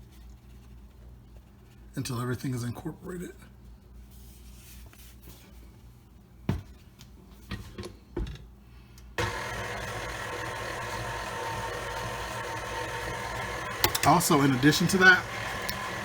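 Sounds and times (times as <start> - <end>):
electric mixer whirring: 9.2 - 16.0.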